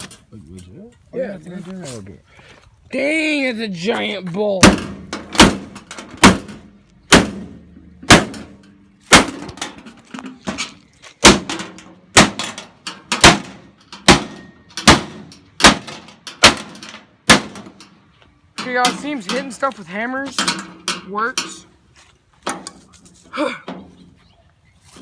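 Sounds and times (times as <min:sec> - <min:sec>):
hammer striking metal cabinet: 0:04.6 - 0:09.9, 0:10.5 - 0:17.8.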